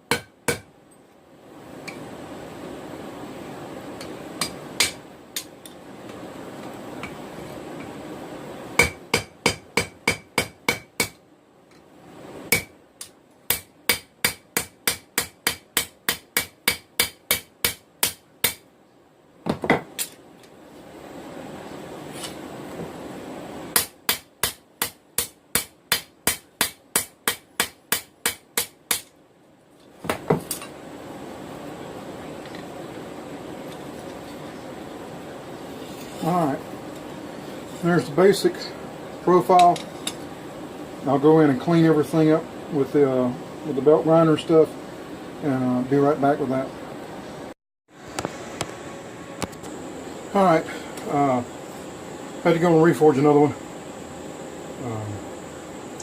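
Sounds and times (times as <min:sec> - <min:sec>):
hammer striking steel on anvil: 0:00.1 - 0:00.7, 0:04.4 - 0:05.5, 0:08.8 - 0:11.2, 0:12.5 - 0:18.7, 0:23.8 - 0:29.1.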